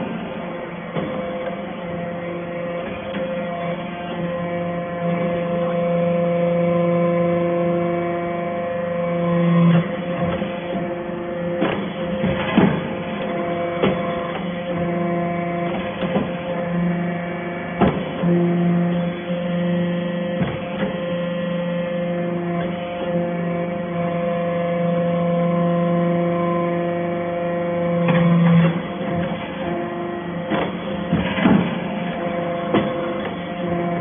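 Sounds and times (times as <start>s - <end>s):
sharp clicks and knocks: 11.6s - 14.5s, 30.5s - 34.0s.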